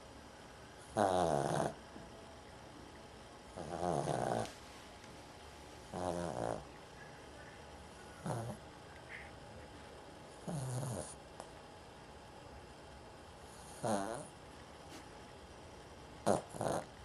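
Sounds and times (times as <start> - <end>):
dog snoring: 0.8 - 1.9, 3.5 - 4.6, 5.9 - 6.7, 8.1 - 9.3, 10.4 - 11.2, 13.4 - 14.4, 16.2 - 17.0.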